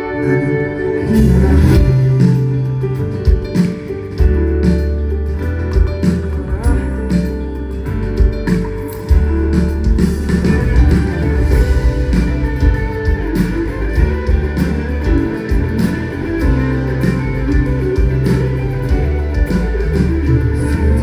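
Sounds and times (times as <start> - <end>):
bass notes: 0.0 - 21.0
guitar: 0.0 - 21.0
live band playing pop instrumental: 0.0 - 21.0
drum hits: 8.2 - 21.0.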